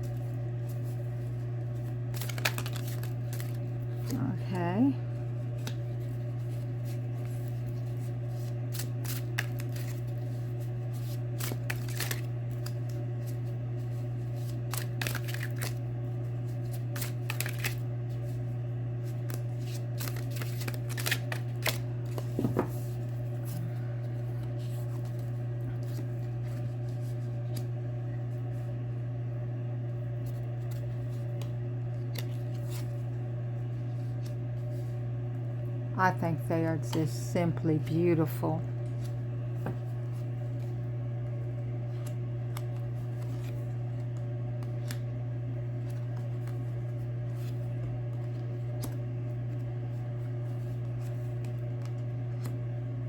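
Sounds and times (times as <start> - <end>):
cards shuffling and sliding: 0.0 - 4.2, 5.4 - 27.7, 30.2 - 33.1, 33.8 - 35.0, 41.8 - 52.6
steady low hum: 0.0 - 53.0.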